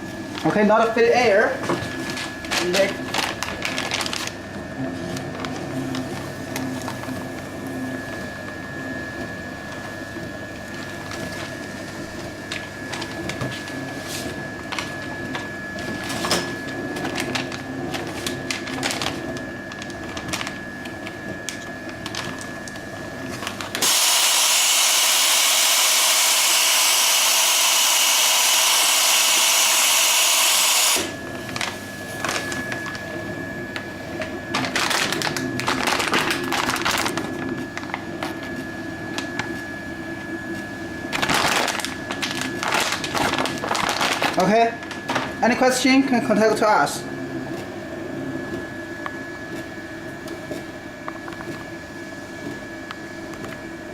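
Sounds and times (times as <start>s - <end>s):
machine motor and conveyor hum: 1.5s - 53.9s
gas hissing: 23.8s - 31.2s.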